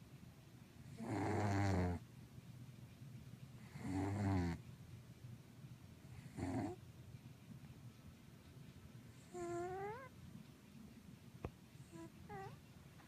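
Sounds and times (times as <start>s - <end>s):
cat snoring: 0.8s - 2.0s, 3.6s - 4.6s, 6.2s - 6.8s, 9.2s - 10.1s.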